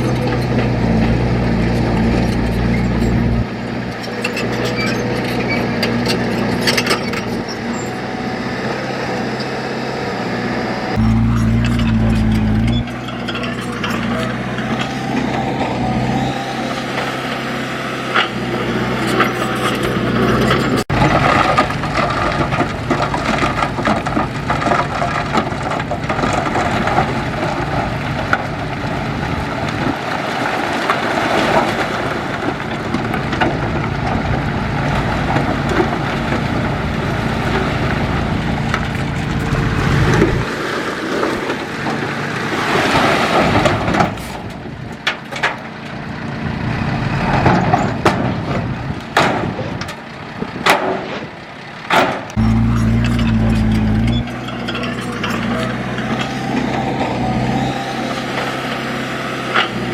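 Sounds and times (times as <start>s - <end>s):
heavy machinery diesel engines: 0.0s - 59.9s
knocks and rattles: 47.3s - 51.3s.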